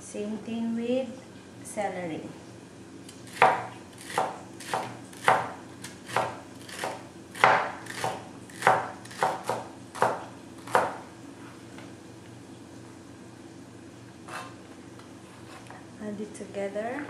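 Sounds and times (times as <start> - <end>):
knife chopping celery on board: 3.3 - 11.0.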